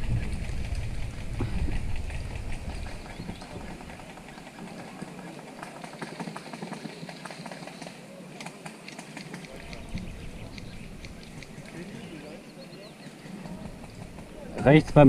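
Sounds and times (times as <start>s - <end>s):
low rumble: 0.0s - 4.1s
small clicks and rustles: 0.1s - 12.0s.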